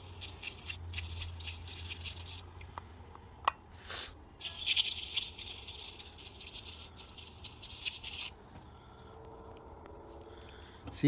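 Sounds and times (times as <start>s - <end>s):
valve rattling when shaken: 0.0s - 2.5s, 4.4s - 8.4s.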